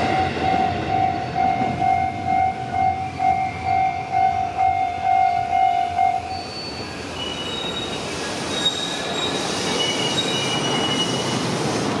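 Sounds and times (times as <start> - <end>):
level crossing warning bell: 0.0 - 6.8
train rumble: 0.0 - 12.0
train wheels squealing on rails: 0.0 - 12.0.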